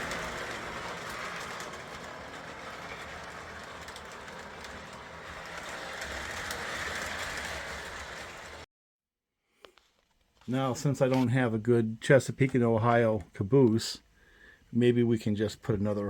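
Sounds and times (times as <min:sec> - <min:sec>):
model train whirring rumble: 0:00.0 - 0:08.6.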